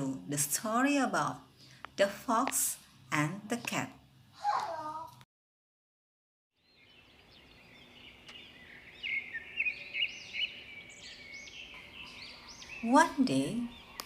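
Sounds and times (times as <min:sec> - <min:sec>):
small birds chirping: 0:06.6 - 0:14.0.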